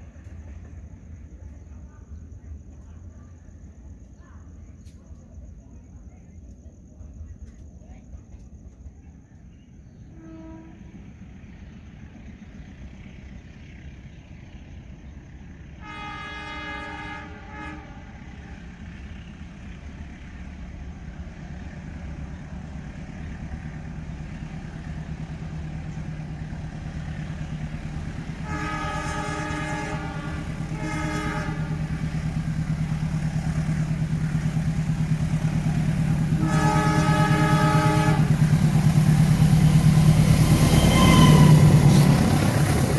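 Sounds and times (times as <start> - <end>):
train running noise: 6.4 - 42.9
train horn blasts: 10.1 - 11.2, 15.6 - 19.1, 24.9 - 42.9.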